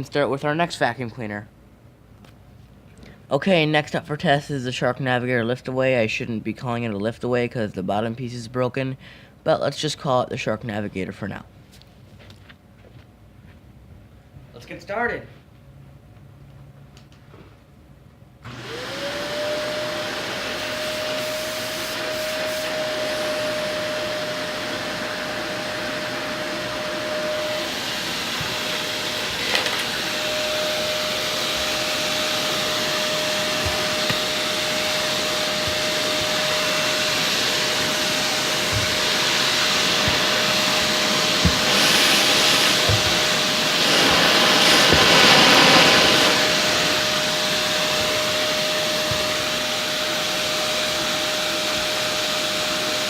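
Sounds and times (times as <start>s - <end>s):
vacuum cleaner running: 18.4s - 53.0s.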